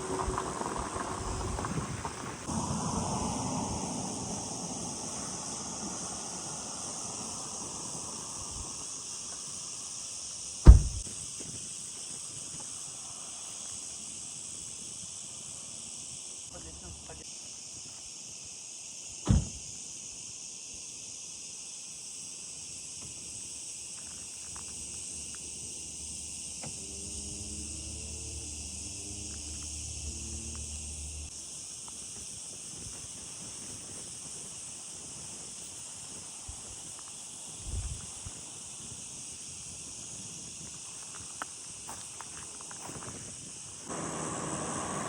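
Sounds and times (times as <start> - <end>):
insects chorus: 0.0 - 45.0
soft thump: 10.6 - 11.0
sharp knock: 10.7 - 11.0
low pitched hum: 26.8 - 31.3.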